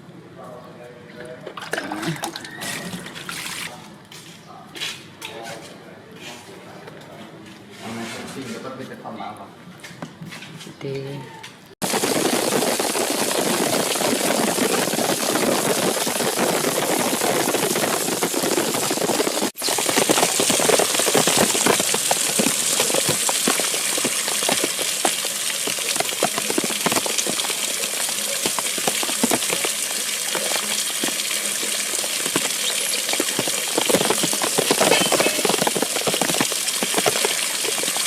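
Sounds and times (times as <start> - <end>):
heavy rain: 11.8 - 38.0.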